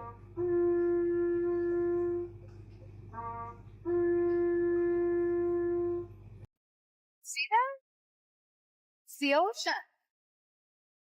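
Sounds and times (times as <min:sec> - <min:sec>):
wind instrument held notes: 0:00.0 - 0:02.5, 0:03.1 - 0:06.2.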